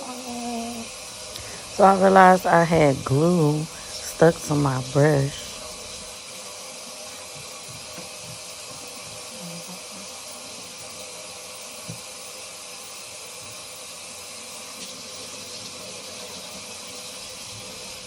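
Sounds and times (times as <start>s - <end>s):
tap water running into sink: 13.4s - 18.0s.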